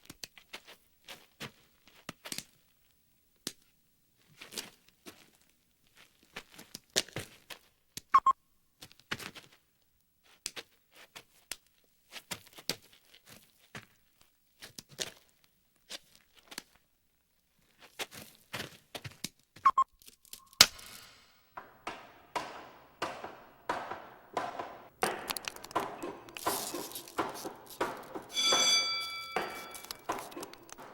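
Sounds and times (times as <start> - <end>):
short chirps: 19.7 - 20.6
rattling hits: 20.6 - 30.9.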